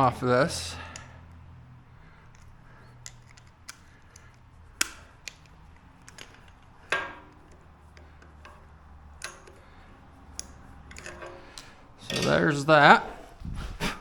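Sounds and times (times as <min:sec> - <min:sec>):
metal clicks and taps: 0:02.3 - 0:09.7, 0:10.3 - 0:12.4.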